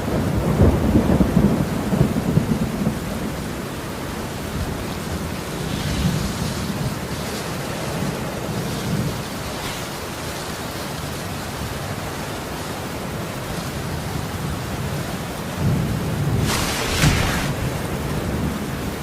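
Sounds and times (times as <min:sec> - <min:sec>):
low rumbles of thunder: 0:00.0 - 0:07.1
heavy rain pouring: 0:00.0 - 0:19.0.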